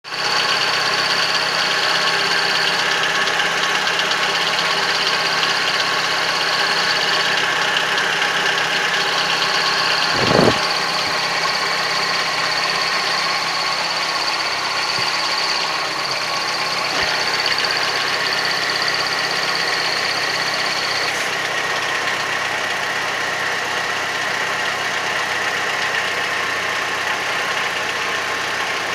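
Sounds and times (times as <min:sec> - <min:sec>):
engine idling: 0:00.0 - 0:28.9
high-pitched clutch whistle: 0:08.0 - 0:21.4.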